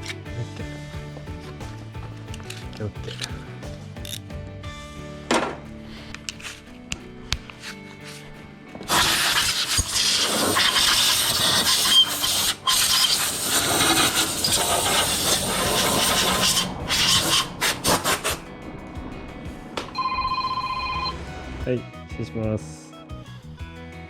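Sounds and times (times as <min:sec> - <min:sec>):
rough rubbing or scraping: 0:05.5 - 0:19.9
electronic beep: 0:19.9 - 0:22.0.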